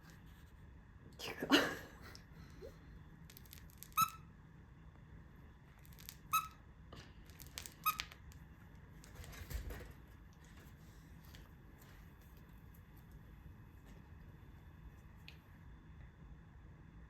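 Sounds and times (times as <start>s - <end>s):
dog toy squeaking: 3.4s - 4.2s, 5.9s - 6.6s, 7.6s - 8.2s.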